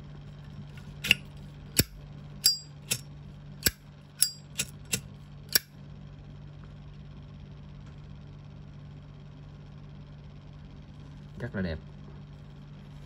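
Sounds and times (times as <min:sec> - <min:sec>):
lighter case clicking: 0:00.8 - 0:01.2, 0:03.6 - 0:05.7.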